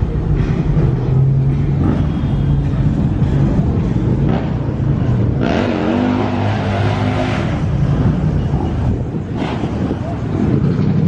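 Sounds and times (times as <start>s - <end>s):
car engines running: 0.0s - 11.0s
car engine revving: 0.4s - 8.3s.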